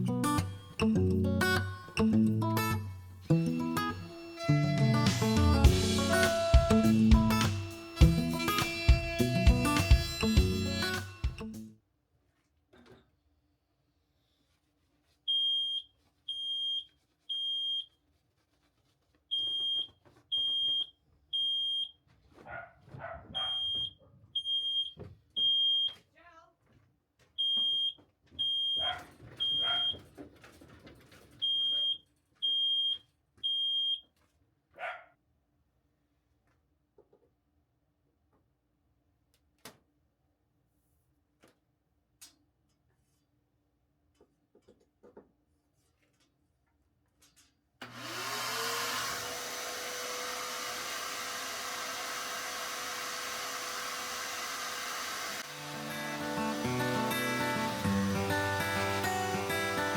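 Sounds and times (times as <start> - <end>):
power tool motor whining: 3.2 - 11.6, 47.8 - 59.9
smoke alarm beeping: 15.3 - 17.9, 23.5 - 25.9, 27.4 - 28.8, 31.4 - 34.0
dog barking: 22.4 - 23.8, 28.8 - 30.0, 31.7 - 32.0, 34.8 - 35.2.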